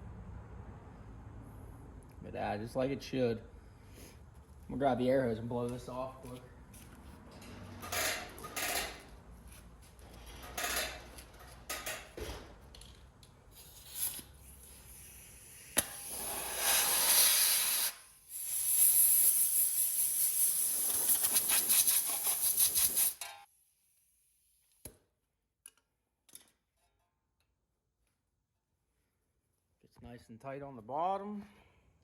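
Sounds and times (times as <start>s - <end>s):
compressed air blasts: 13.5s - 23.2s.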